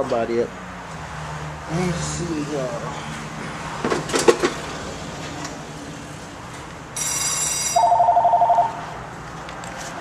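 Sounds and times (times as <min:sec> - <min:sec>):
warbling two-tone ring: 0:07.0 - 0:08.8.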